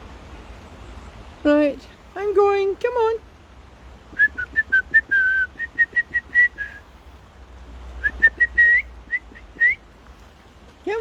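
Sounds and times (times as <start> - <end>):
person whistling short high notes: 4.2 - 6.8, 8.0 - 9.8.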